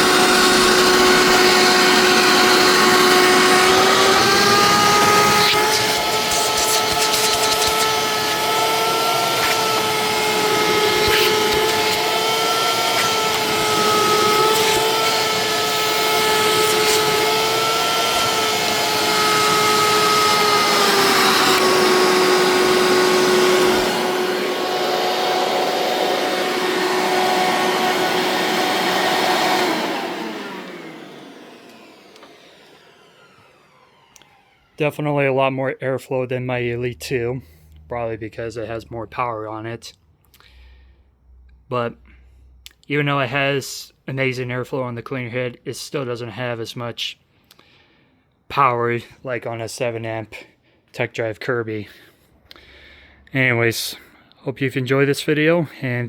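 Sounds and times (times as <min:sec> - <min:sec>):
motor winding down: 0:00.0 - 0:34.8
vacuum cleaner motor whine: 0:00.0 - 0:34.8.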